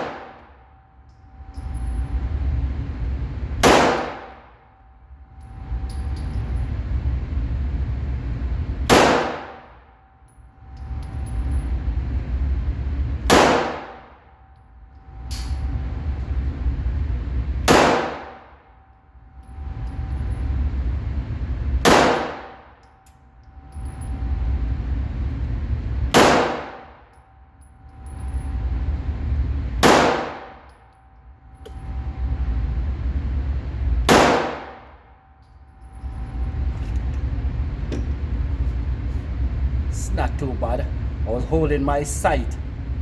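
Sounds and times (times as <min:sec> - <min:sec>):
pistol shots with metallic ring: 0:03.6 - 0:04.4, 0:08.9 - 0:09.6, 0:13.3 - 0:14.1, 0:17.7 - 0:18.4, 0:21.8 - 0:23.1, 0:26.1 - 0:27.1, 0:29.8 - 0:30.8, 0:34.1 - 0:35.0.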